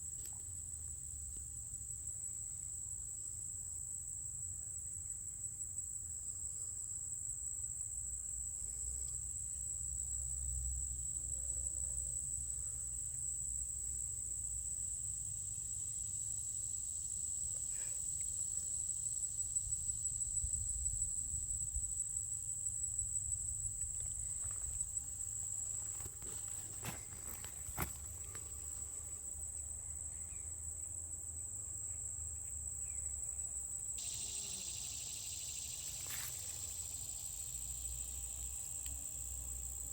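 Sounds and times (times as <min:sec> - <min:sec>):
insects singing: 0:33.9 - 0:39.9.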